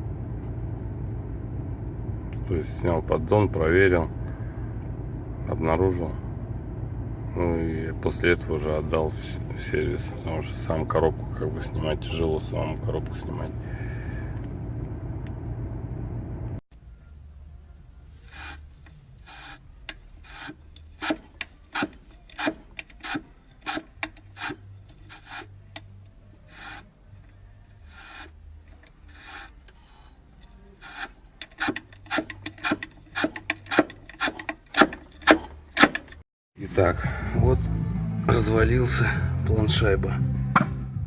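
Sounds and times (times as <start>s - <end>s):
faint low hum: 0.0s - 22.4s
rasping scraping strokes: 18.1s - 25.6s, 26.3s - 26.9s, 27.8s - 28.4s, 29.0s - 30.2s, 30.8s - 36.2s.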